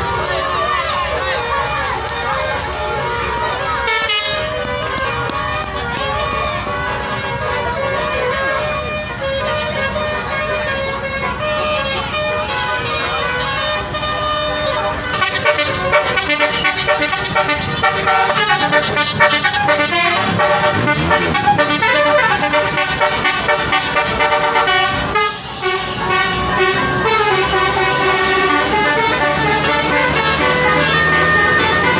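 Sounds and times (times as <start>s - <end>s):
musical air horns melody: 1.2s - 31.9s.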